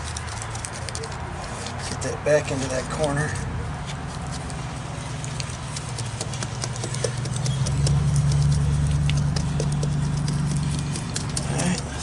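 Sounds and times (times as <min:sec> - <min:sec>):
sharp clicks and taps: 0:05.2 - 0:12.0.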